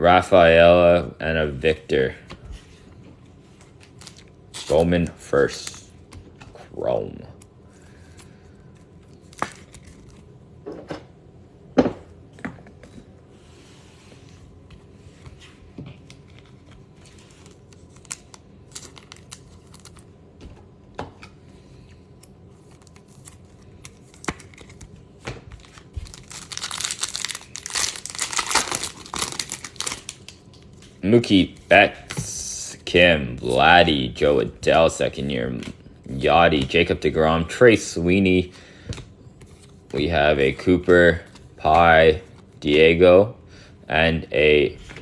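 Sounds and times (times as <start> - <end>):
wrapper crinkling and tearing: 3.8 - 4.9, 9.1 - 10.3, 16.1 - 20.1, 22.6 - 31.0.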